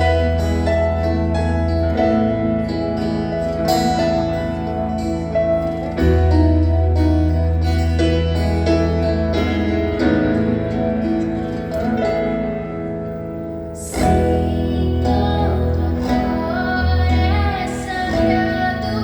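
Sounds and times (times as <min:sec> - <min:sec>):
woman singing with instruments: 0:13.8 - 0:19.0.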